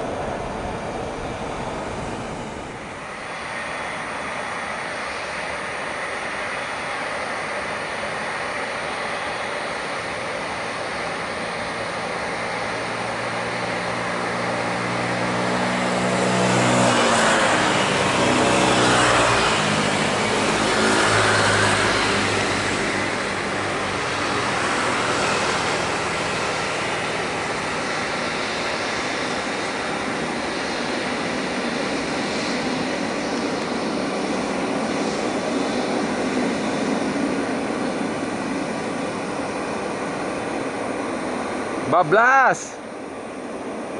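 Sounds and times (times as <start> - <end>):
jet airliner passing by: 0.0 - 43.9.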